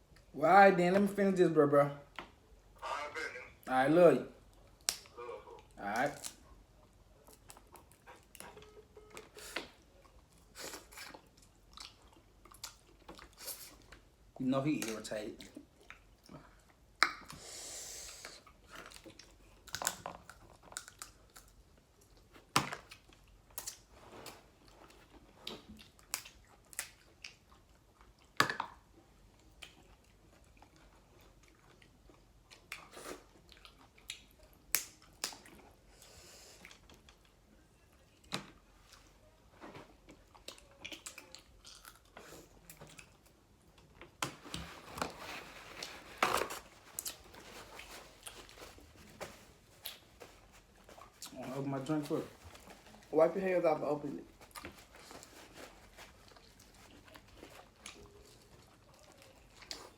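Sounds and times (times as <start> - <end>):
chewing and biting: 9.9 - 14.0, 18.4 - 35.8, 39.8 - 44.4, 54.4 - 59.9.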